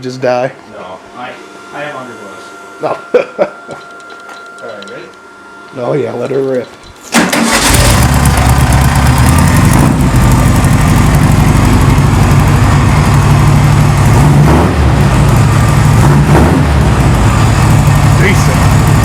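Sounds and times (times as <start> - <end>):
engine starting and idling: 7.1 - 14.2.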